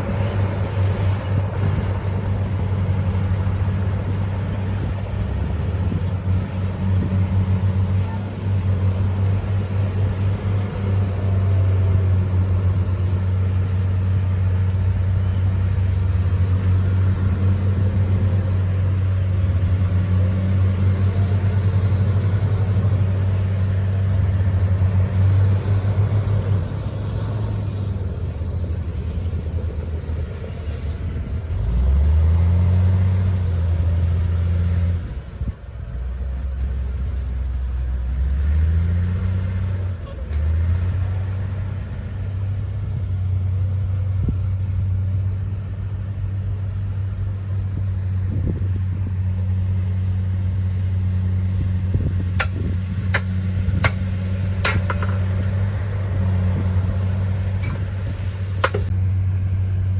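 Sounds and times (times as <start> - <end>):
bulldozer diesel engine revving: 0.0 - 59.9
sharp clicks: 52.4 - 55.3.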